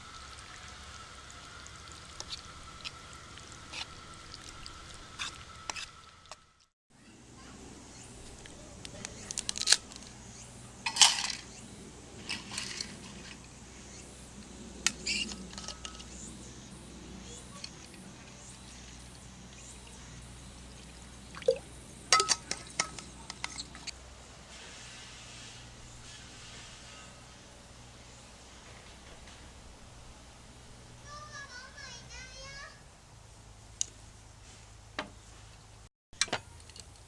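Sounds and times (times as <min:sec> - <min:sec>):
metal cookware clinking: 0:22.1 - 0:23.8.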